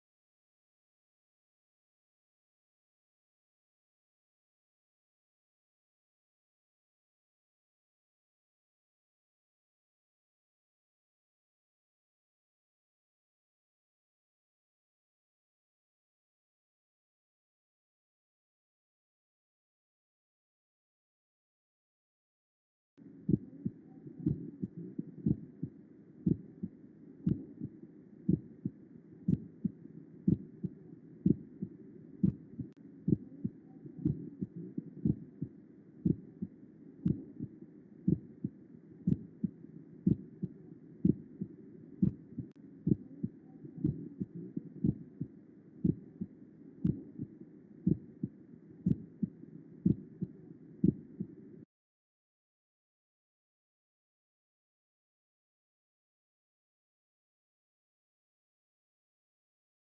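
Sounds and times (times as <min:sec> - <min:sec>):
heartbeat thuds: 0:23.3 - 0:27.7, 0:28.3 - 0:28.5, 0:29.3 - 0:29.7, 0:30.3 - 0:37.5, 0:38.1 - 0:38.3, 0:39.1 - 0:48.3, 0:48.9 - 0:51.1.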